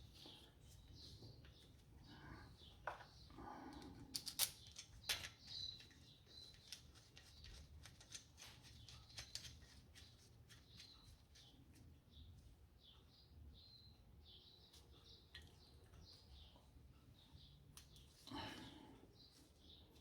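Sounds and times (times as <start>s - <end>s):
birds chirping faintly: 0.0s - 20.0s
clicks of small parts handled: 4.1s - 5.4s.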